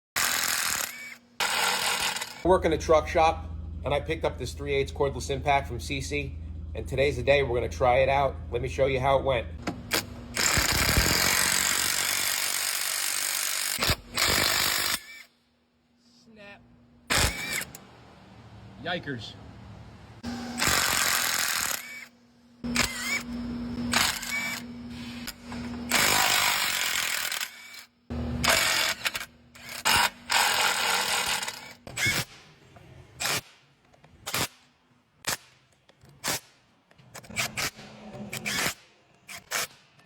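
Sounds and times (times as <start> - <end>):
impact wrench hammering: 0.2 - 2.4, 9.6 - 15.2, 20.6 - 22.1.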